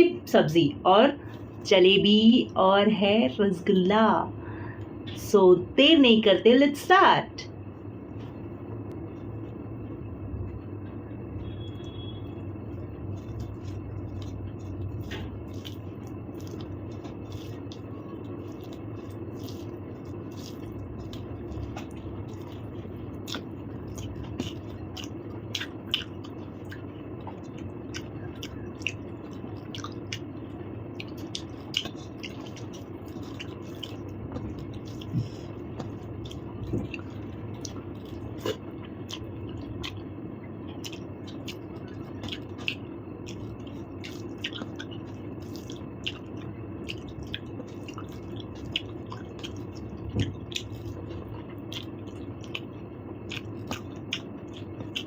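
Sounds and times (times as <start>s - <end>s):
steady low hum: 0.0s - 55.0s
wet chewing and squishing: 11.4s - 55.0s.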